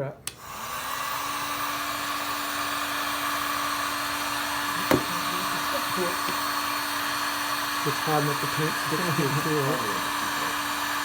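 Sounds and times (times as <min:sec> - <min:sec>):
heat gun blowing: 0:00.2 - 0:11.0
sharp knock: 0:04.8 - 0:05.2.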